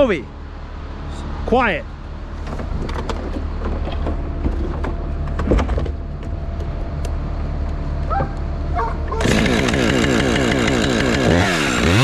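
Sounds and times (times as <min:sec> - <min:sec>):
truck engine running: 0:00.0 - 0:12.0
dog whining: 0:08.1 - 0:09.3.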